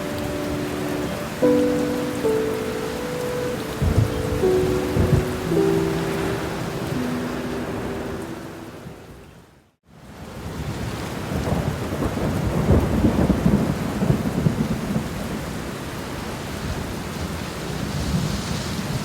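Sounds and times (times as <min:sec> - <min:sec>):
thunder rumbling: 0:00.0 - 0:09.0
steady rainfall: 0:00.0 - 0:19.0.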